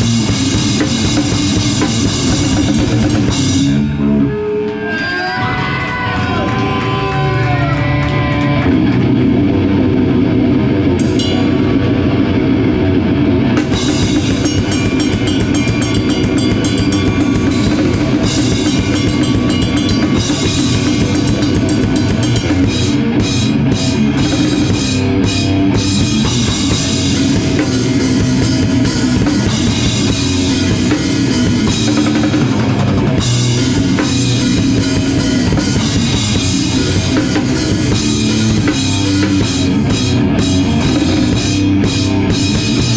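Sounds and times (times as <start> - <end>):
drum kit pounding: 0.0 - 4.3, 5.7 - 42.9
rock band playing live: 0.0 - 42.9
cymbals crashing: 13.6 - 24.7.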